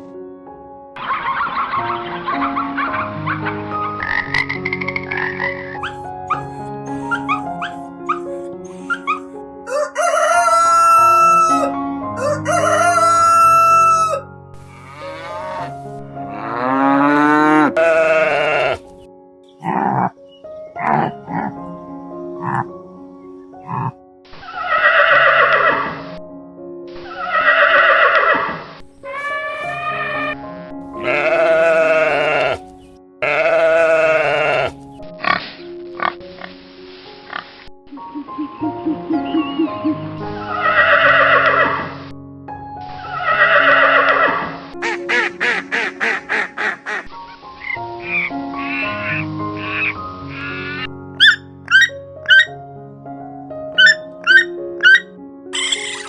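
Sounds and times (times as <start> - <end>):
background music: 0.0 - 56.0
steady animal call: 4.0 - 14.2, 16.3 - 19.0, 19.6 - 20.2, 20.8 - 21.6, 22.4 - 22.7, 23.6 - 24.0, 29.0 - 30.4, 31.0 - 35.4, 48.1 - 52.5, 53.8 - 56.0
animal grunt: 5.2 - 9.3, 16.3 - 18.9, 19.6 - 20.2, 20.8 - 21.6, 22.4 - 22.7, 31.0 - 35.4
horse whinnying: 16.6 - 18.9, 29.0 - 30.4, 31.0 - 34.8, 55.6 - 56.0.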